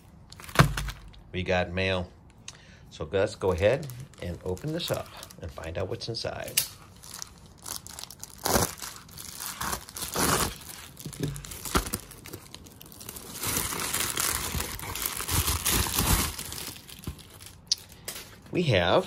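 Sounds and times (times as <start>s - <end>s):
packaging crinkling and tearing: 0.3s - 1.2s, 3.5s - 5.7s, 6.4s - 18.4s.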